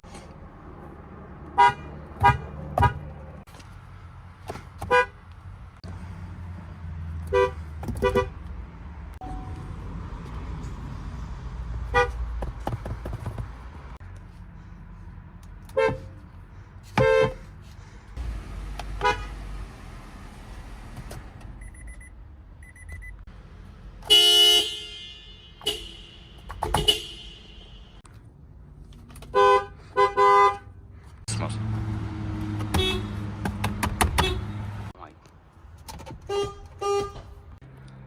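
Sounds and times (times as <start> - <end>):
street traffic rumble: 0.0 - 38.0
car horn honks: 1.6 - 3.1, 7.3 - 8.4, 11.9 - 12.2, 17.0 - 17.4, 18.9 - 19.5, 24.0 - 28.0, 29.3 - 30.7, 32.7 - 33.3, 34.1 - 34.7, 36.3 - 37.4
small high beeps: 21.6 - 23.2.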